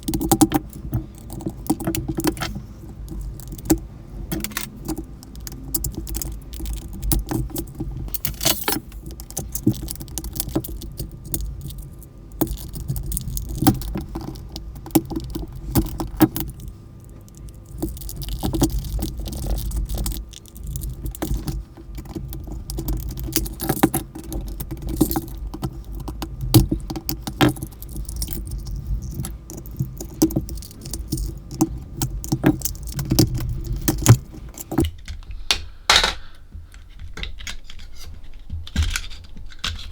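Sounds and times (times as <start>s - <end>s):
scraping and rustling: 0.0s - 35.0s, 36.8s - 39.9s
plastic parts clicking and rattling: 0.0s - 39.9s.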